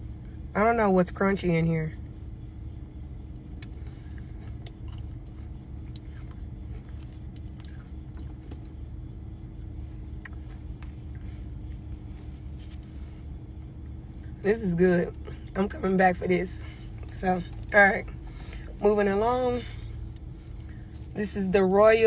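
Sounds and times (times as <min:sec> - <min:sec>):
crunchy chewing: 0:03.5 - 0:14.4.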